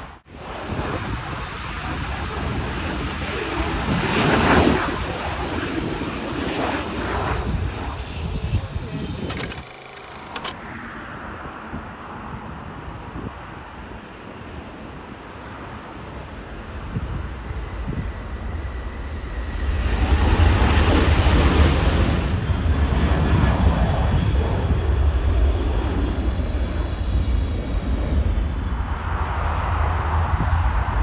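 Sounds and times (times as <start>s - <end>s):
high engine whine: 9.2s - 10.6s.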